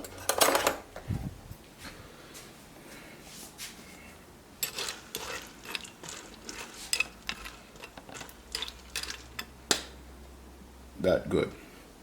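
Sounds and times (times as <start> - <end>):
spoon scraping pot: 4.6 - 9.5.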